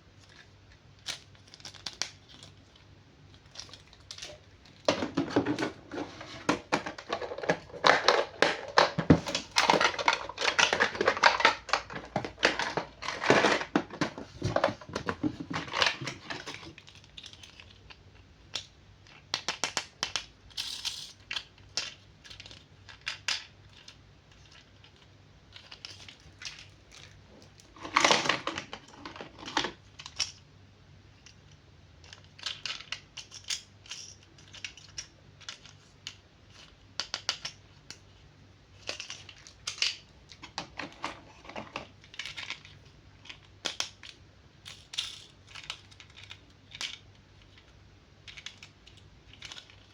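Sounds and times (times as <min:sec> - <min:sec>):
packaging crinkling and tearing: 0:00.2 - 0:17.9.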